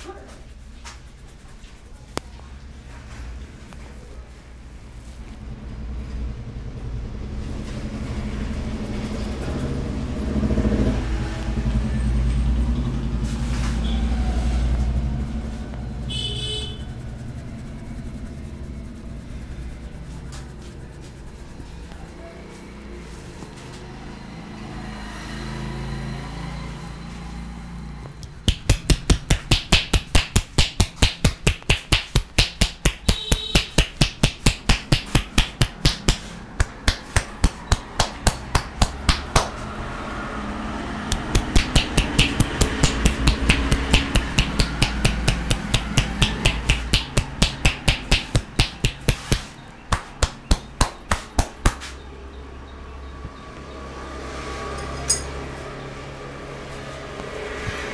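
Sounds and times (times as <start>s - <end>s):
rapid hand slaps massage: 28.2s - 39.8s, 41.0s - 52.0s.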